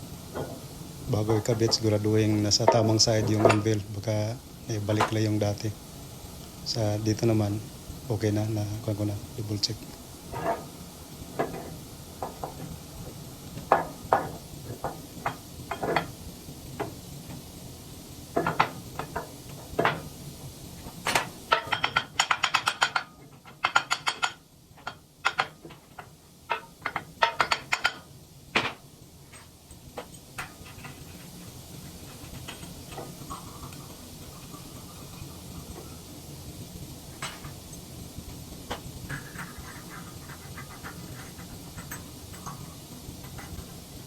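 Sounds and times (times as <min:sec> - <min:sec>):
tools knocking on metal: 0:11.4 - 0:12.7, 0:13.6 - 0:16.1, 0:21.1 - 0:28.8.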